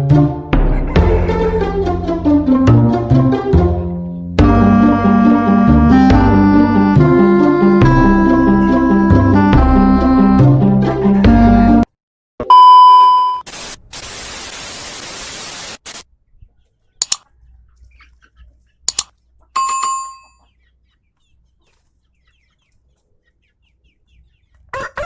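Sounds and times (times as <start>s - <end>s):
steady hiss: 13.5s - 16.0s
sharp double clicks: 17.0s - 17.3s, 18.9s - 19.1s
bell-like ding: 19.6s - 20.4s.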